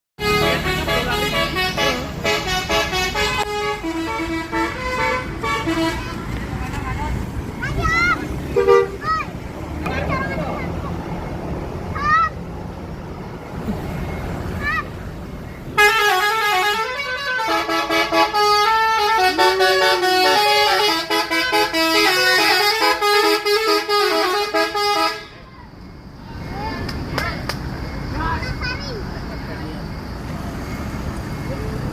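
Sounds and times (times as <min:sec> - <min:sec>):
bus musical horn playing tune: 0:00.2 - 0:06.2, 0:08.5 - 0:09.0, 0:15.7 - 0:25.4
low engine rumble: 0:00.2 - 0:23.4.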